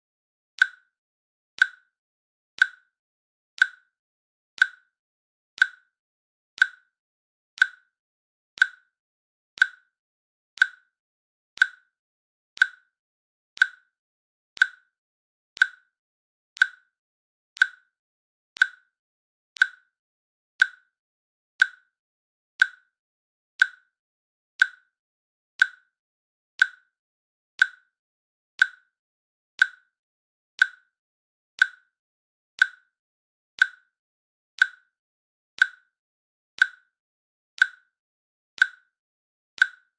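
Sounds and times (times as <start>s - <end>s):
timer clicks: 0.6s - 0.9s, 1.6s - 1.9s, 2.6s - 2.9s, 3.6s - 4.0s, 4.6s - 4.9s, 5.6s - 6.0s, 6.6s - 7.0s, 7.6s - 8.0s, 8.6s - 9.0s, 9.6s - 10.0s, 10.6s - 11.0s, 11.6s - 12.0s, 12.6s - 13.0s, 13.6s - 14.0s, 14.6s - 15.0s, 15.6s - 16.0s, 16.6s - 17.0s, 17.6s - 18.0s, 18.6s - 19.0s, 19.6s - 20.0s, 20.6s - 21.0s, 21.6s - 22.0s, 22.6s - 23.0s, 23.6s - 24.0s, 24.6s - 25.0s, 25.6s - 26.0s, 26.6s - 27.0s, 27.6s - 28.0s, 28.6s - 29.0s, 29.6s - 30.0s, 30.6s - 31.0s, 31.6s - 32.0s, 32.6s - 33.0s, 33.6s - 34.0s, 34.6s - 35.0s, 35.6s - 36.0s, 36.6s - 37.0s, 37.6s - 38.0s, 38.6s - 39.0s, 39.6s - 39.9s.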